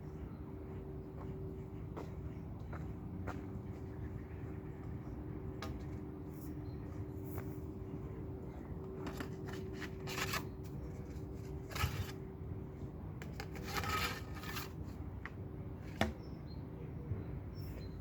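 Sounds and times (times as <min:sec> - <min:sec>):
steady low rumble: 0:00.0 - 0:13.4
rustling handling noise: 0:08.8 - 0:12.2.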